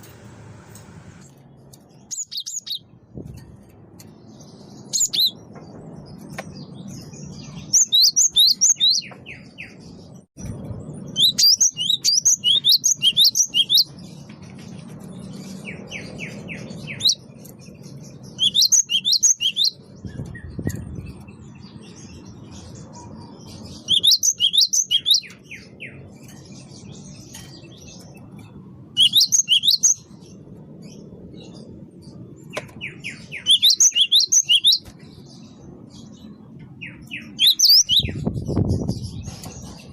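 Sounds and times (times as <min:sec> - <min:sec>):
bird singing rapid high notes: 0:01.9 - 0:03.0, 0:04.2 - 0:05.4, 0:32.7 - 0:39.8.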